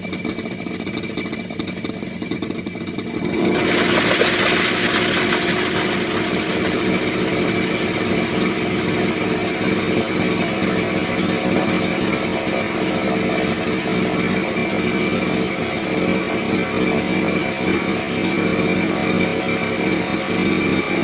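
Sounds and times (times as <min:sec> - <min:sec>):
brush cutter engine running: 0:00.0 - 0:21.0
high whine of grinder: 0:02.9 - 0:21.0.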